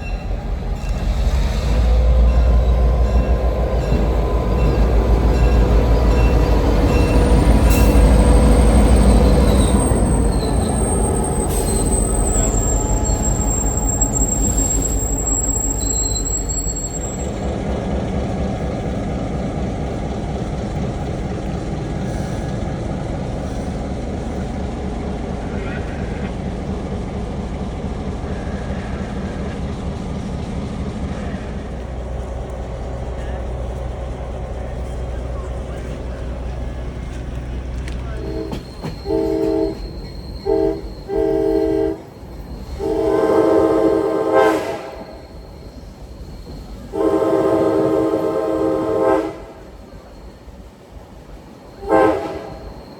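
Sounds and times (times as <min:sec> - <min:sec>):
diesel train rumbling: 0:00.0 - 0:52.9
wheels squealing on rails: 0:00.0 - 0:52.9
locomotive horn blasts: 0:38.2 - 0:42.1, 0:42.8 - 0:45.3, 0:46.9 - 0:49.7, 0:51.8 - 0:52.8.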